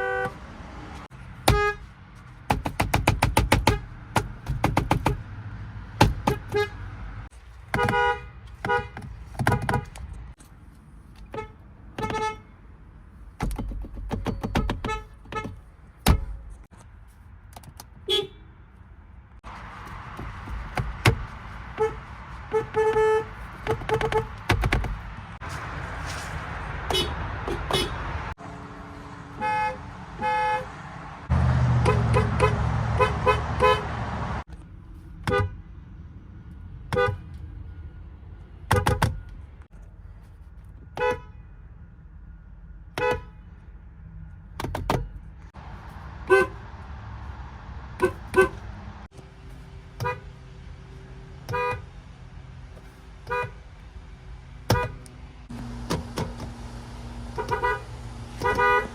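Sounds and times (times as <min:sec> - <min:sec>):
car horns honking: 0:00.0 - 0:00.7, 0:01.3 - 0:01.9, 0:03.4 - 0:04.3, 0:06.0 - 0:07.0, 0:07.7 - 0:10.1, 0:11.2 - 0:12.6, 0:14.4 - 0:16.4, 0:18.0 - 0:18.6, 0:20.7 - 0:24.7, 0:26.8 - 0:28.4, 0:29.2 - 0:34.4, 0:35.2 - 0:35.6, 0:36.9 - 0:37.4, 0:38.6 - 0:39.5, 0:40.9 - 0:41.5, 0:42.9 - 0:43.5, 0:46.2 - 0:47.2, 0:47.8 - 0:49.1, 0:49.9 - 0:50.4, 0:51.2 - 0:52.1, 0:53.2 - 0:53.6, 0:54.6 - 0:58.9
car engine idling: 0:54.5 - 0:58.9.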